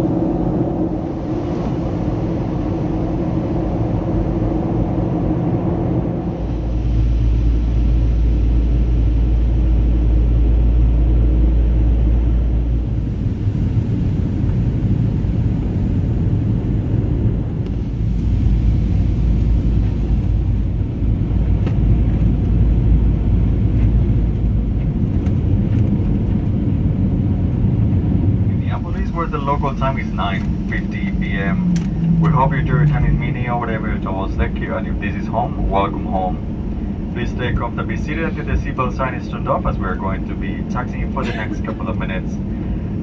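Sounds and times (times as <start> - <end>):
airliner cabin engine rumble: 0.0 - 43.0.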